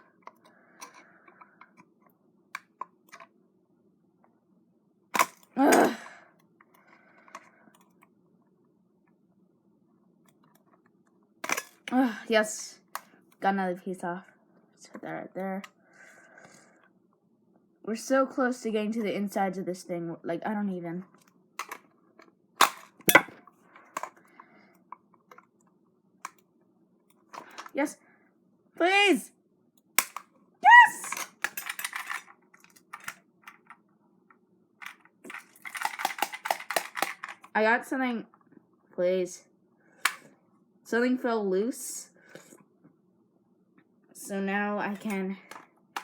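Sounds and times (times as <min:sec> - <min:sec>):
plastic snapping: 0:05.2 - 0:05.5, 0:30.0 - 0:30.3
plastic shell cracking: 0:05.2 - 0:05.9, 0:30.0 - 0:30.3, 0:34.8 - 0:37.5
person grunting: 0:05.6 - 0:06.2
knife prying plastic: 0:22.6 - 0:23.4.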